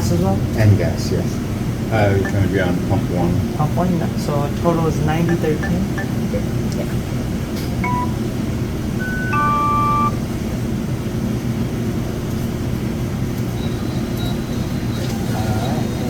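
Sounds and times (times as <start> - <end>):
steady low hum: 0.0 - 10.5
payment terminal beeps: 2.2 - 3.1, 5.2 - 6.6, 7.8 - 8.3, 9.0 - 10.2.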